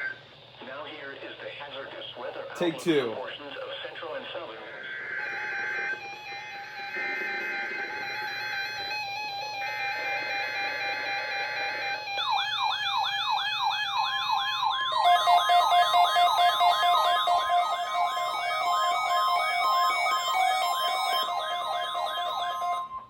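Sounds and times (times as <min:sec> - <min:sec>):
siren-like rising warble alarm: 0:05.6 - 0:23.0.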